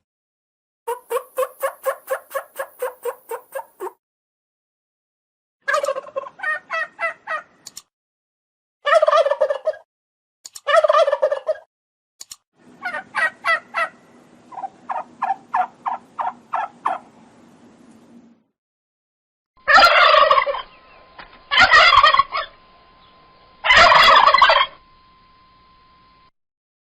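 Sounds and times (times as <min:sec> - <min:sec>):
turkey gobbling: 0:00.9 - 0:04.0, 0:05.7 - 0:07.5, 0:08.9 - 0:09.8, 0:10.7 - 0:11.7, 0:12.8 - 0:17.1, 0:19.6 - 0:20.8, 0:21.5 - 0:22.6, 0:23.6 - 0:24.8.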